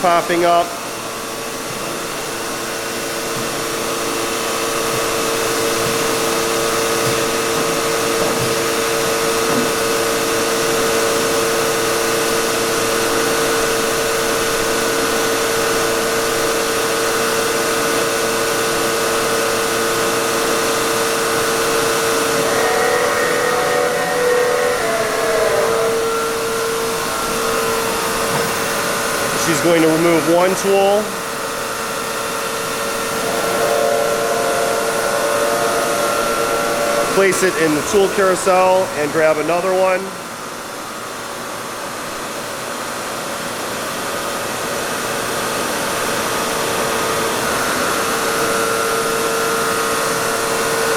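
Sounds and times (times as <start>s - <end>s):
vacuum pump drone: 0.0s - 50.9s
higher machine tones: 18.2s - 40.4s.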